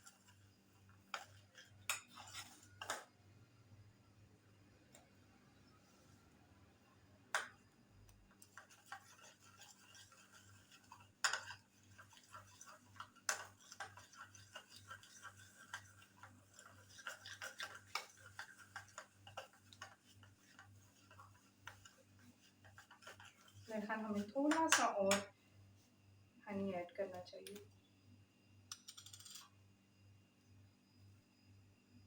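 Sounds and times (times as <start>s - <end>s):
spoon scraping paste in bowl: 0.0s - 3.1s, 8.3s - 25.4s, 28.7s - 29.6s.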